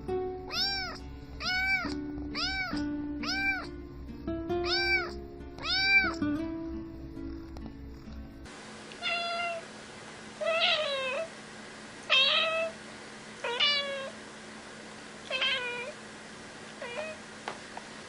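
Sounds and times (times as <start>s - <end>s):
cat meowing: 0.5s - 3.7s, 4.6s - 6.2s, 9.0s - 9.6s, 10.4s - 11.3s, 12.1s - 12.8s, 13.4s - 14.2s, 15.3s - 16.0s, 16.8s - 17.2s.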